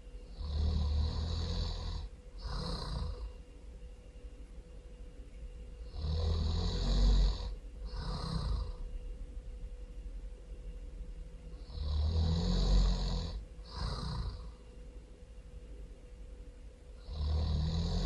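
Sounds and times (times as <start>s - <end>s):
person snoring loudly: 0.3s - 3.3s, 5.8s - 8.8s, 11.6s - 14.6s, 17.0s - 18.0s.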